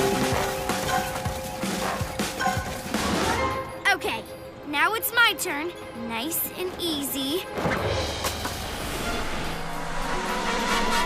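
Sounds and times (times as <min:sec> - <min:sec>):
cartoon action music: 0:00.0 - 0:03.9.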